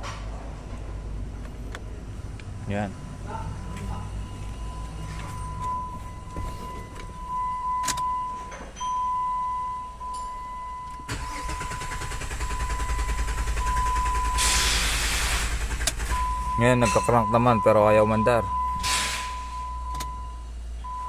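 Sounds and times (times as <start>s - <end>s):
starter cranking engine: 11.1s - 16.6s.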